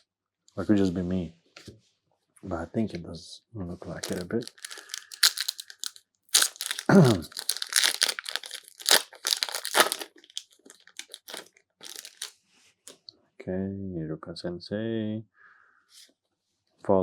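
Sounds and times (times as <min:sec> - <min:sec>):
wrapper tearing and crinkling: 0:04.0 - 0:12.3.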